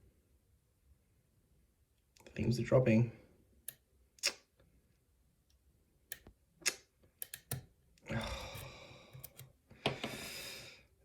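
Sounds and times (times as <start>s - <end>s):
lock picking clicks: 7.2s - 7.7s, 8.4s - 9.5s.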